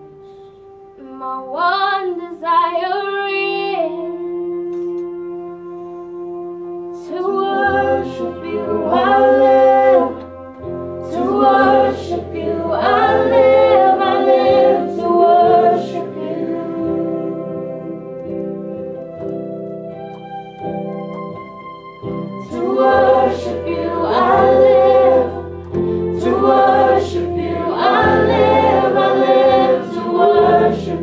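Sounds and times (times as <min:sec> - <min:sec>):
held chords: 0:00.0 - 0:31.0
group of voices singing: 0:07.0 - 0:18.4, 0:22.4 - 0:31.0.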